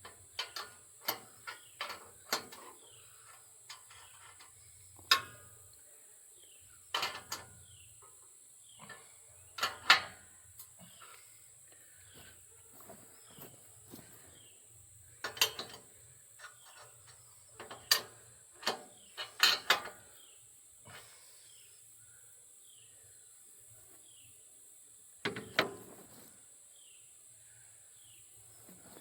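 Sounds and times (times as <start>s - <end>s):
hand tools clicking on metal: 0.0s - 5.4s, 6.9s - 7.6s, 15.2s - 20.0s.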